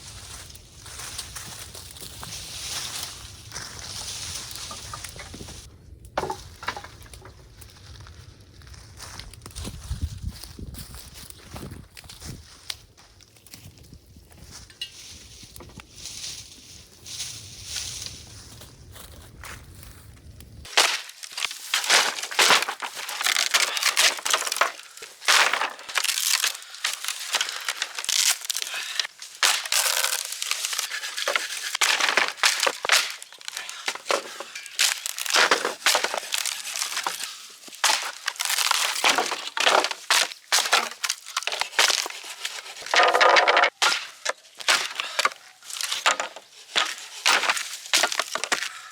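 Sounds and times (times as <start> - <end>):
junk crunching and clattering: 4.6 - 7.4, 20.7 - 48.9.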